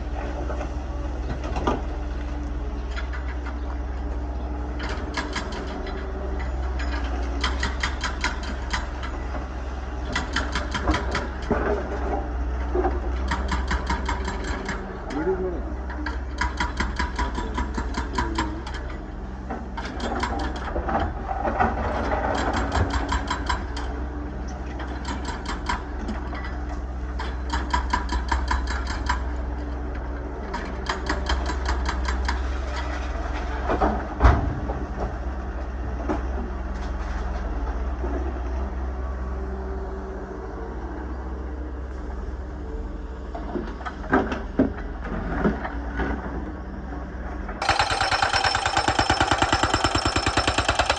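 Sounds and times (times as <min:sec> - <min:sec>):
excavator diesel engine running: 0:00.0 - 0:50.9
rapid metallic clattering: 0:47.6 - 0:50.9.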